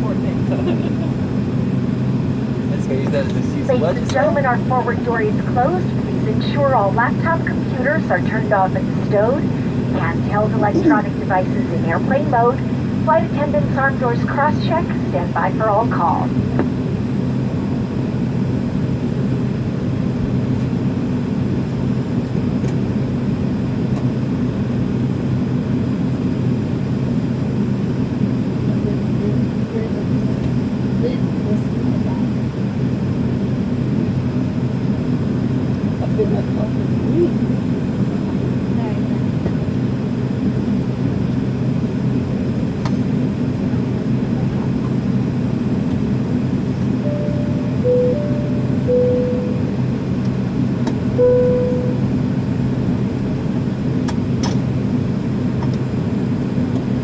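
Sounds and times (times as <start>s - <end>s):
aircraft cabin hum: 0.0s - 25.8s, 36.8s - 57.0s
held tones: 47.0s - 50.2s, 51.2s - 52.4s.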